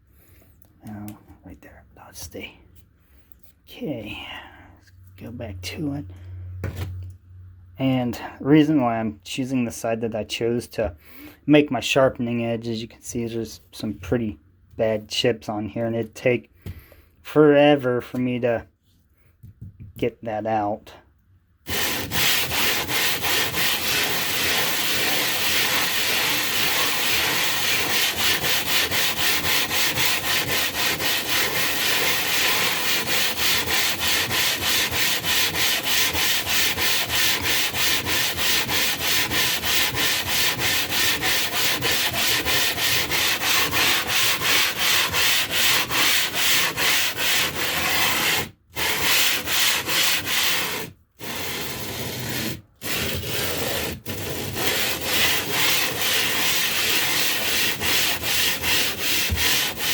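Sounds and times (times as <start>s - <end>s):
stone scraping on abrasive surface: 21.7s - 59.9s.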